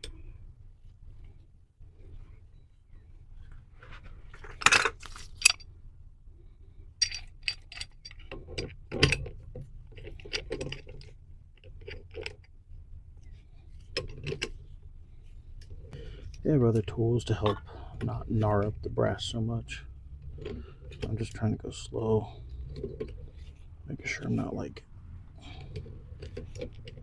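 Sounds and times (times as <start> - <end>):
metal tool clanking on fitting: 7.0 - 8.2.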